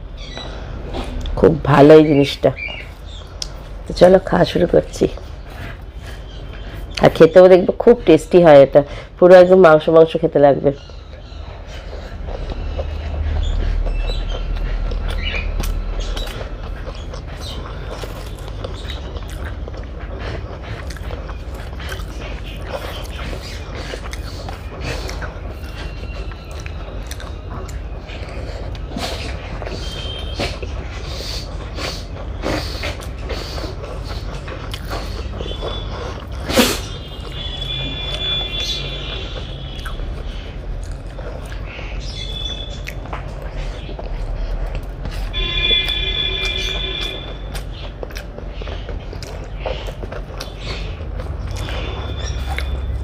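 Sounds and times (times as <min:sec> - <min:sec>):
close eating sounds: 0:00.0 - 0:53.0
steady low hum: 0:00.0 - 0:53.0
person chewing food: 0:10.8 - 0:53.0.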